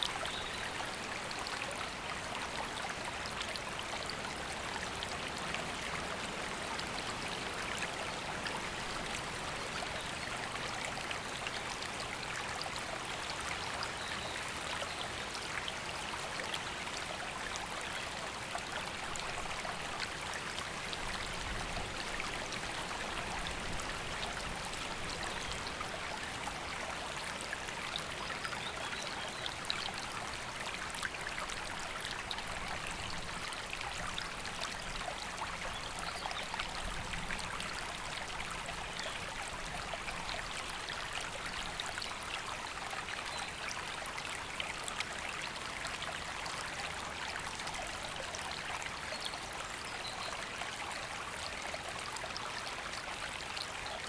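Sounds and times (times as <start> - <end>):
babbling river water: 0.0 - 54.0.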